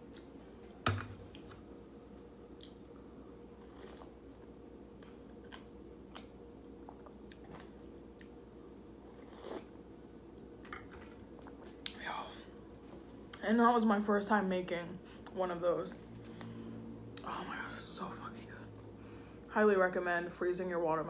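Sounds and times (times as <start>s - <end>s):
soft mouth smacks and clicks: 2.6s - 3.0s
person chewing: 3.6s - 8.4s, 9.0s - 9.7s.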